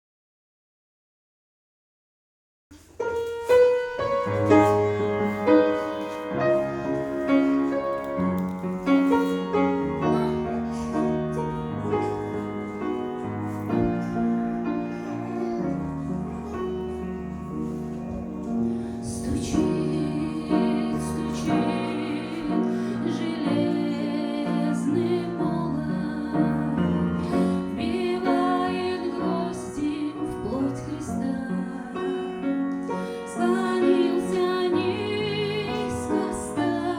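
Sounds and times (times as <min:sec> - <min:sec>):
piano chords: 0:02.8 - 0:36.9
woman singing: 0:09.5 - 0:12.7, 0:19.0 - 0:36.9.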